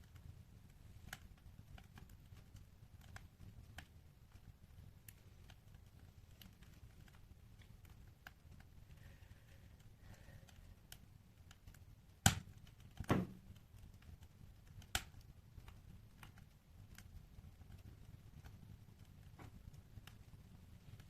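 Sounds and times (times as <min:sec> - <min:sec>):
wood fire crackling: 0:00.0 - 0:21.0
sharp pops of fire: 0:11.7 - 0:17.1.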